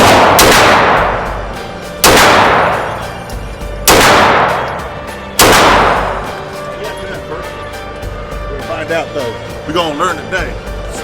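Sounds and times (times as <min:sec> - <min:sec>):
pistol shots echoing: 0:00.0 - 0:01.4, 0:02.0 - 0:03.2, 0:03.9 - 0:06.3.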